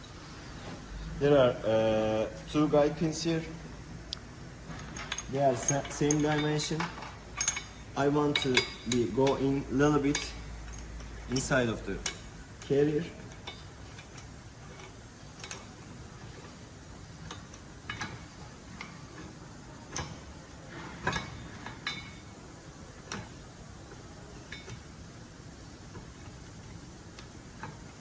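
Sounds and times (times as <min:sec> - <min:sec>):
light metal clicks and knocks: 0:04.7 - 0:16.5, 0:17.2 - 0:22.4, 0:23.0 - 0:25.0.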